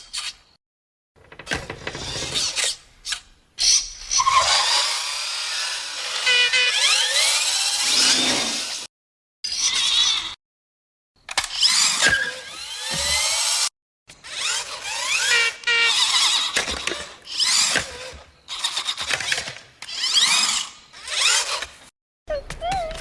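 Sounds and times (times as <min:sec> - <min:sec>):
toy car electric motor whining: 0:01.4 - 0:08.9, 0:11.3 - 0:21.9.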